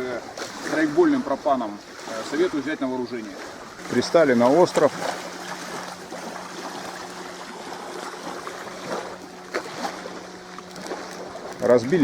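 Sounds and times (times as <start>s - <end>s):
water lapping at shore: 0.0s - 12.0s
small ticks: 10.4s - 11.9s.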